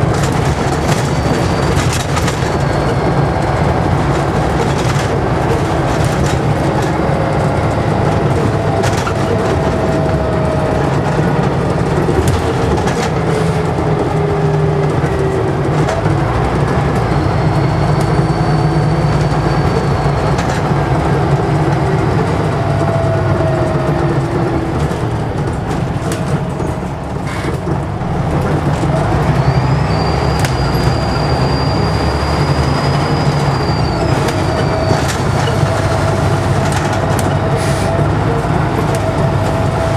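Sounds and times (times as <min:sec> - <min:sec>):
bus engine drone: 0:00.0 - 0:39.9
turbocharger whistle: 0:16.9 - 0:21.2, 0:29.0 - 0:39.9.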